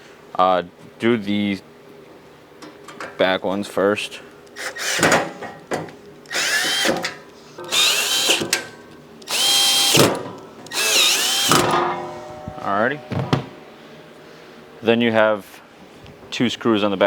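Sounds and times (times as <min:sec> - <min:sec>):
power drill driving screws: 0:04.6 - 0:05.3, 0:06.3 - 0:08.7, 0:09.3 - 0:11.7.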